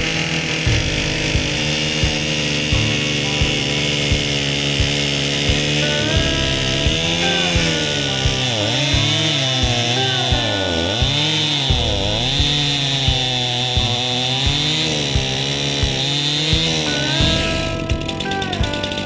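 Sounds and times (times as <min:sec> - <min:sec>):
chainsaw cutting wood: 0:00.0 - 0:19.0
music with steady beat: 0:00.0 - 0:19.0.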